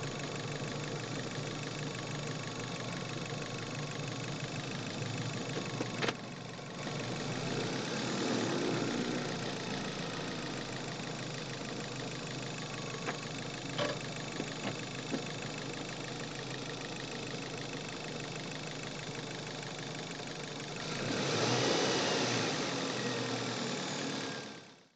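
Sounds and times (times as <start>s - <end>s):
car engine idling: 0.0s - 24.9s.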